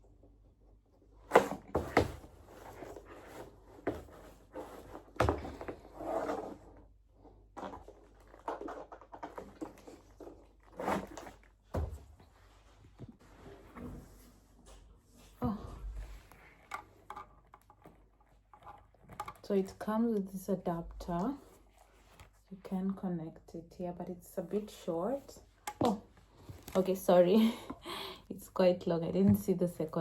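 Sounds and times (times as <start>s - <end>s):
plastic parts knocking and clicking: 16.6s - 19.4s.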